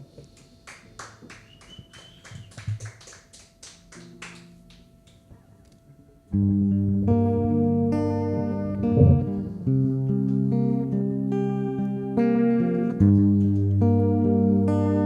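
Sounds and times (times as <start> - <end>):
soft low guitar notes: 5.4 - 15.0
quietly held note: 8.9 - 9.6.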